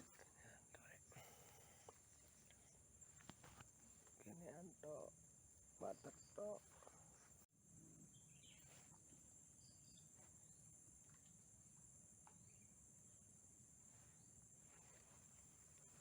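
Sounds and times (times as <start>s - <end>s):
faint bird chirps: 0.0s - 11.4s, 12.2s - 13.1s
crickets chirping: 0.0s - 16.0s.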